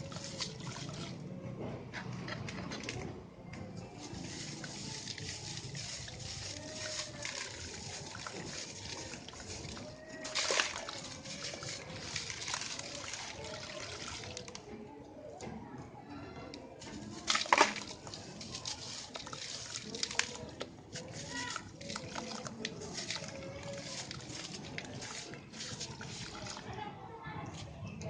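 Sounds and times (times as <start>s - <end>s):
concrete lumps crumbling: 16.9s - 26.8s.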